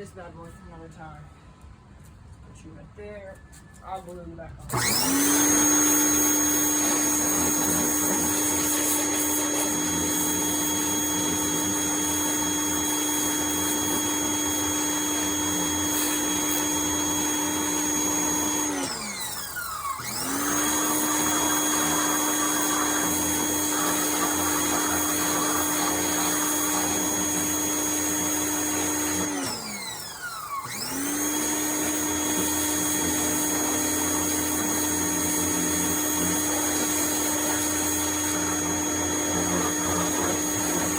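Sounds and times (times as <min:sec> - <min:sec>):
power washer spraying: 0:04.7 - 0:40.9.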